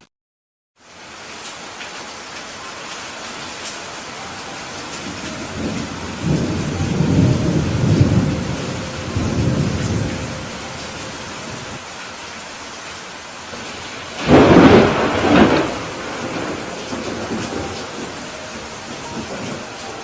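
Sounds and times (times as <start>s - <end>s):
heavy rain: 0.8s - 20.0s
thunder rumbling: 4.7s - 11.8s, 13.5s - 20.0s.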